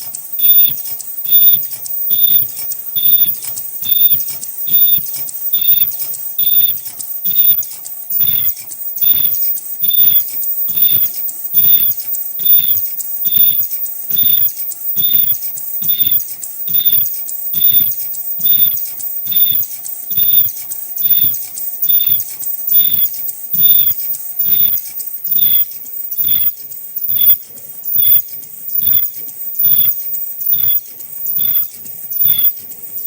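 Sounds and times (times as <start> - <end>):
brief tone: 0.0 - 32.6
machine short high squeak: 0.0 - 33.0
thin high whine: 0.0 - 33.0.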